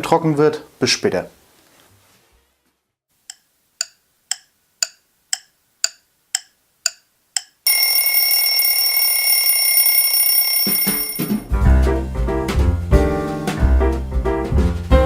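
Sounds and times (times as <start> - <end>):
clock ticking: 3.2 - 8.8
alarm clock bell ringing: 7.7 - 11.5.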